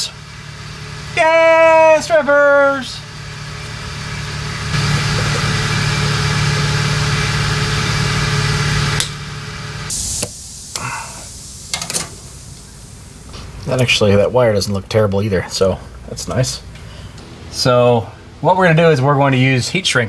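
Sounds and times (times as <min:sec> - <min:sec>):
motor humming: 0:00.0 - 0:14.6
short hiss: 0:07.6 - 0:14.3.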